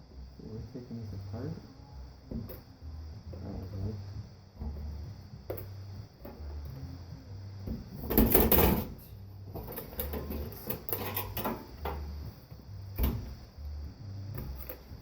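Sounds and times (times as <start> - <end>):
parts clicking and clattering: 8.0 - 12.2.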